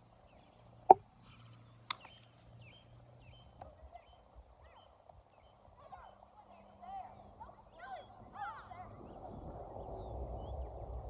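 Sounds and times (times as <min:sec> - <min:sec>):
faint click: 0:01.9 - 0:02.2.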